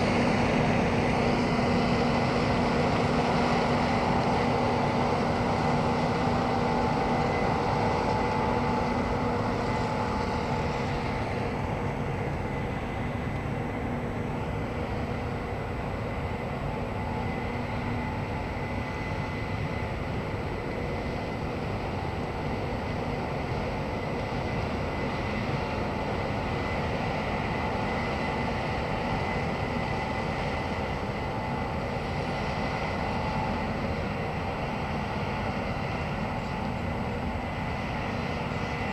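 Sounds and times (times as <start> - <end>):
harvester engine drone: 0.0 - 38.9.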